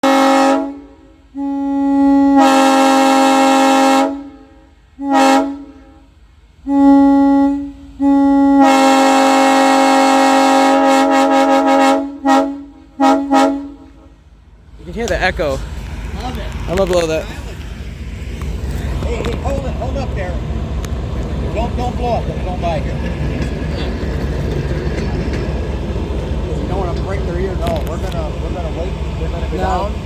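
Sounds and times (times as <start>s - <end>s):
locomotive air horn blasts: 0.0s - 14.3s.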